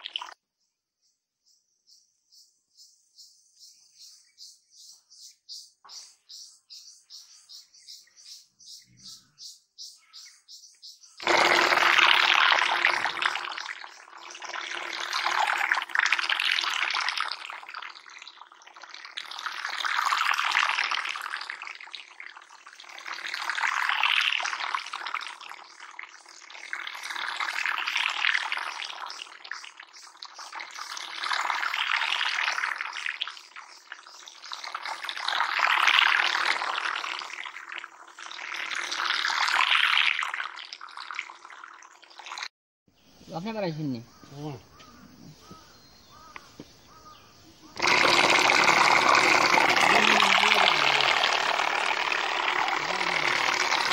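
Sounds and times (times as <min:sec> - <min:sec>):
water rushing and splashing: 0:47.8 - 0:53.9.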